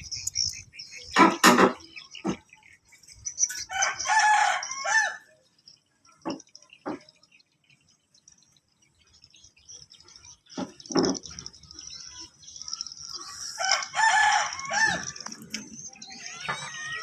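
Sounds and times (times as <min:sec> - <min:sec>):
small birds chirping faintly: 0:00.0 - 0:17.0
rooster crowing: 0:03.7 - 0:05.3, 0:13.6 - 0:15.3.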